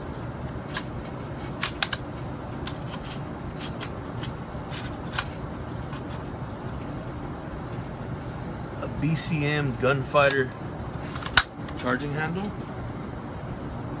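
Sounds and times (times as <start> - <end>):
low background rumble: 0.0 - 14.0
rifle parts clicking and rattling: 0.6 - 6.3.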